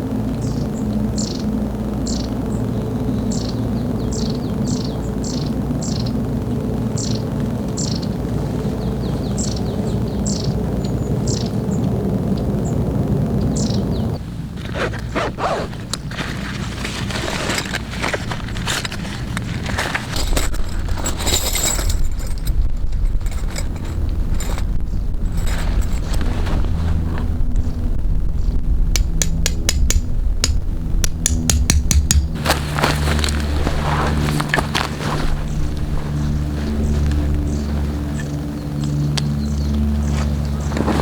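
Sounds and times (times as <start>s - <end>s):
steady low rumble: 0.0s - 41.0s
bird chirping: 2.1s - 6.2s, 7.0s - 11.8s, 32.2s - 41.0s
rustling: 14.2s - 28.0s, 32.3s - 41.0s.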